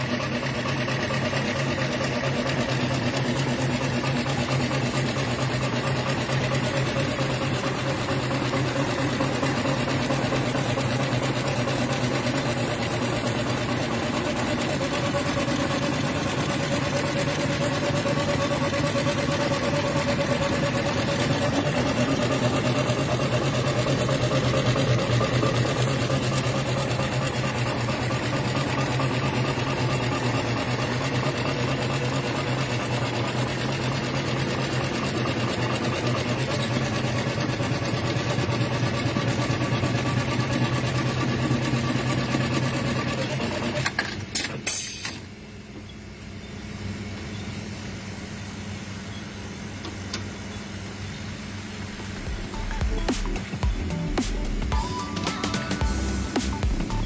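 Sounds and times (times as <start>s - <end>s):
steady motor hum: 0.0s - 44.0s, 46.3s - 57.0s
sewing machine needle stitching: 0.0s - 45.1s.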